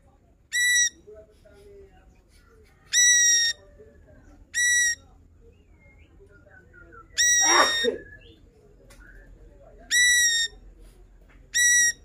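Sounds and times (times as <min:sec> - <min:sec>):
soft bird chirps: 0:00.5 - 0:01.1, 0:02.3 - 0:10.6, 0:11.5 - 0:12.0.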